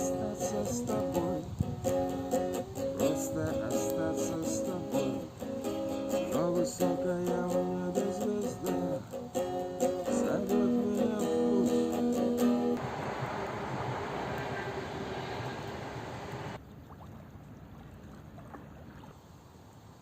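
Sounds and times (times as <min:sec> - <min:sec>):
person singing: 0:00.0 - 0:12.8
acoustic guitar strumming: 0:00.0 - 0:16.2
steady rushing noise: 0:12.1 - 0:16.6.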